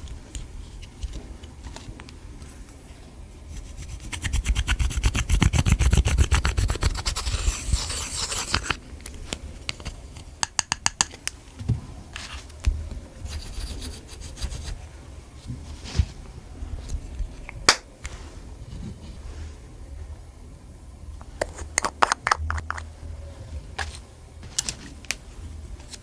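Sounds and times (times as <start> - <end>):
slime rubbing: 3.5 - 8.8.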